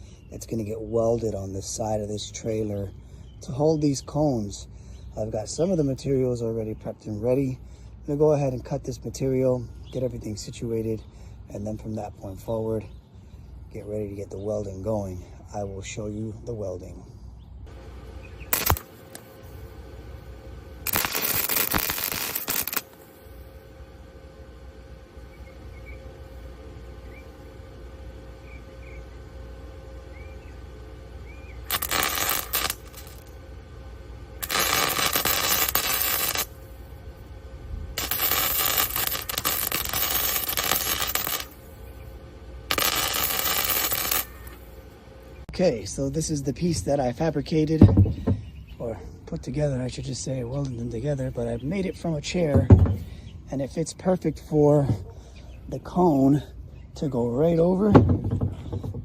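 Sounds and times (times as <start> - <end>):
welding arc crackling: 17.7 - 23.8, 31.6 - 33.5, 34.2 - 44.8.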